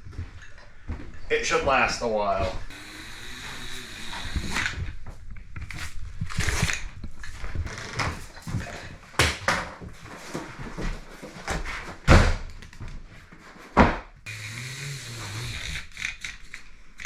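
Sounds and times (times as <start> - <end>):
hard knocks and thuds: 13.8 - 14.1.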